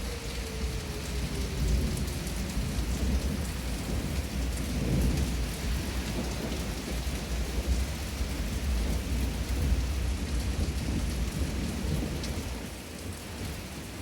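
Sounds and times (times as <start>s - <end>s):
faint tornado siren winding down: 0.0s - 8.0s
low rolling thunder: 0.0s - 14.0s
steady rain: 0.0s - 14.0s.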